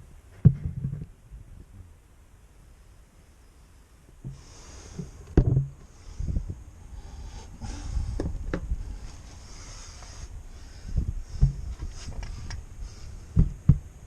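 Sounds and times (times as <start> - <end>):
gusty wind on microphone: 5.4 - 14.0.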